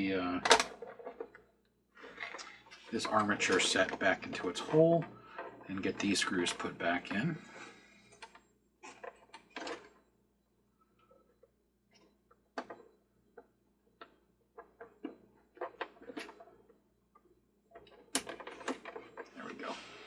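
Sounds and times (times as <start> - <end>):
plastic parts clicking: 17.8 - 19.6.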